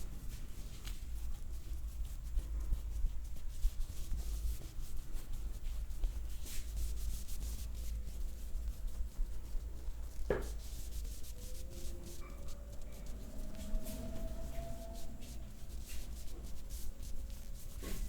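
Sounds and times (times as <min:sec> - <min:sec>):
hands rubbing over skin: 0:02.8 - 0:18.0
low rumble: 0:11.1 - 0:17.7.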